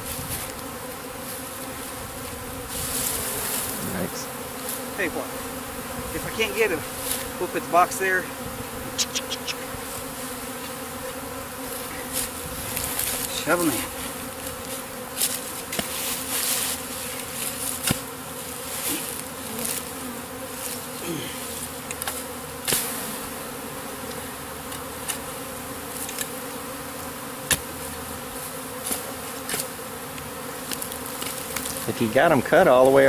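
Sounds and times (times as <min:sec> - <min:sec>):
bee swarm buzzing: 0:00.0 - 0:33.0.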